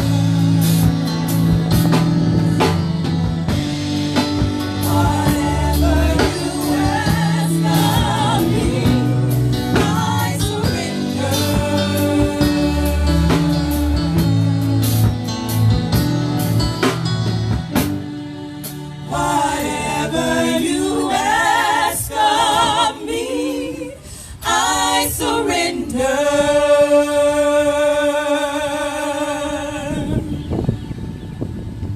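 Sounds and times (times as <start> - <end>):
gospel band accompaniment: 0.0 - 31.9
voices singing with vibrato: 3.5 - 15.7, 17.9 - 31.1.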